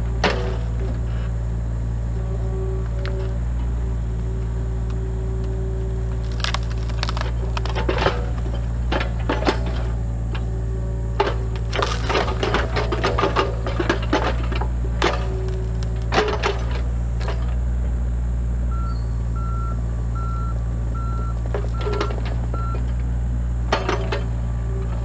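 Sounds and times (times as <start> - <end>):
mini excavator engine running: 0.0 - 25.0
wood and roots cracking: 4.9 - 9.1, 11.5 - 13.4, 14.2 - 16.4
travel alarm beeping: 18.7 - 22.8.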